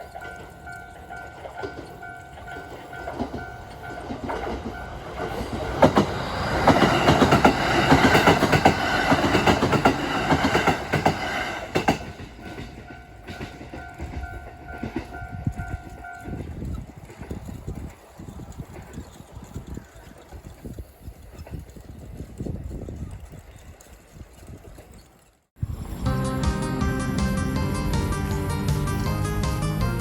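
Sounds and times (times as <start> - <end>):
level-crossing alarm ringing: 0.0 - 5.4
train wheels clattering on rail joints: 0.0 - 25.5.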